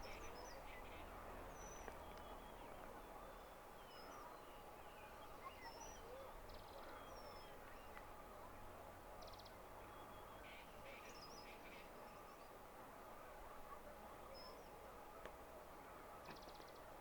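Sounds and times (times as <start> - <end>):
birds chirping: 0.0 - 8.1.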